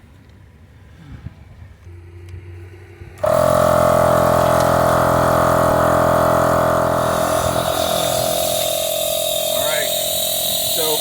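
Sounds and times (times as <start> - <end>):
air compressor humming: 1.8 - 11.0.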